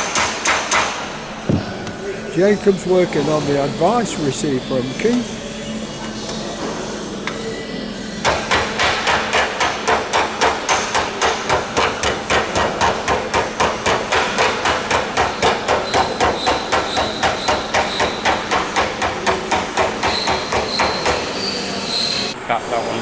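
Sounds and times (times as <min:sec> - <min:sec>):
hand hammering: 0:00.0 - 0:02.3, 0:08.2 - 0:21.6.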